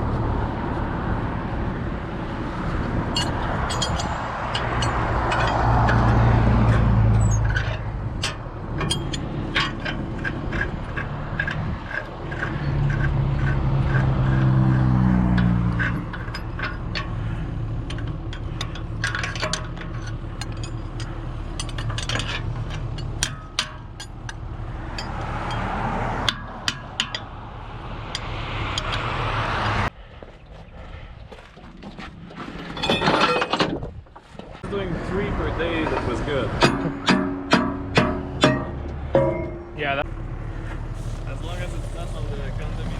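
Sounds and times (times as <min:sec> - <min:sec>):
excavator diesel engine working: 0:00.8 - 0:25.8, 0:34.6 - 0:42.9
metallic clanks and knocks: 0:03.0 - 0:29.2, 0:32.3 - 0:34.7, 0:35.6 - 0:40.1.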